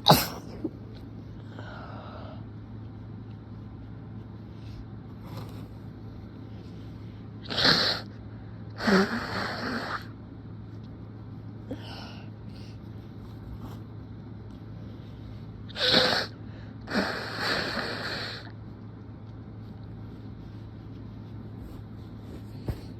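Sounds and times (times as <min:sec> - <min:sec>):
person sneezing: 0:00.0 - 0:00.7.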